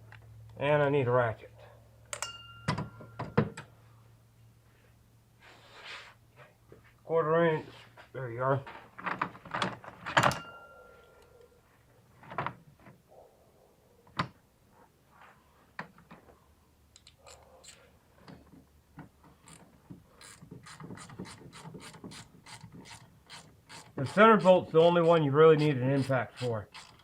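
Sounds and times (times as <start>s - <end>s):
tools clinking on metal: 2.1s - 3.7s, 10.2s - 11.4s
ratchet clicking: 20.2s - 24.2s, 25.6s - 27.0s.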